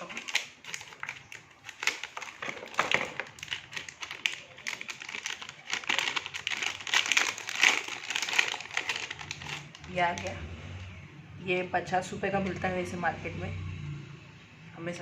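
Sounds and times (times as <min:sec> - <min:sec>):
plastic packaging crinkling: 0:00.0 - 0:10.3.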